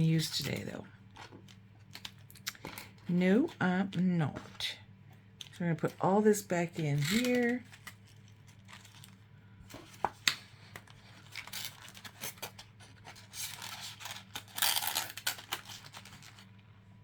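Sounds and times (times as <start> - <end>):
packaging rustling: 6.8 - 16.6.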